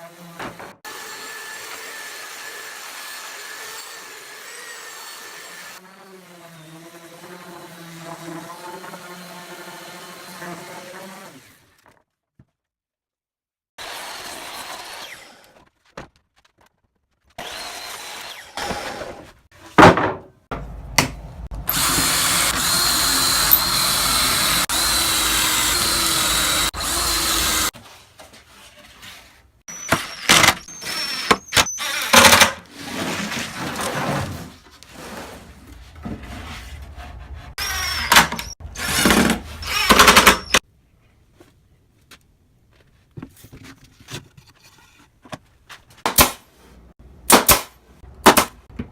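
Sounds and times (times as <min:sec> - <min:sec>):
power tool motor whining: 0:21.6 - 0:27.7.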